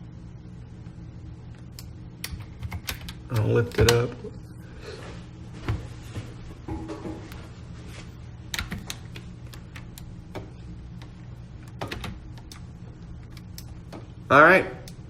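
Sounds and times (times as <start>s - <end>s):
low steady hum: 0.0s - 15.0s
keyboard and mouse clicks: 1.8s - 4.1s, 8.5s - 14.1s.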